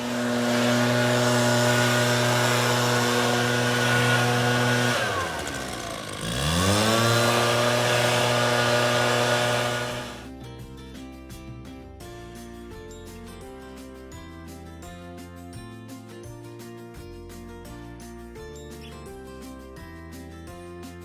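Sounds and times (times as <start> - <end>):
chainsaw running: 0.0 - 10.3.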